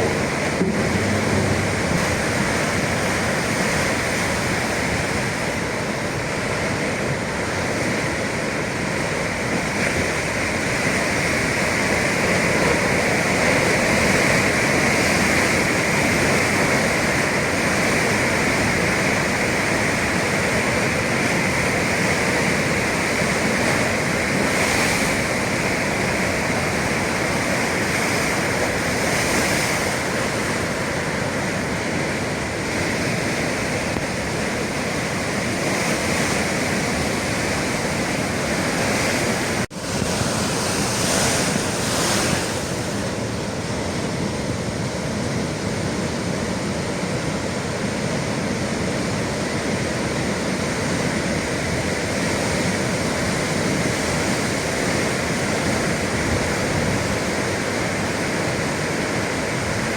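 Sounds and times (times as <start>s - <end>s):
ocean waves breaking: 0.0s - 59.9s.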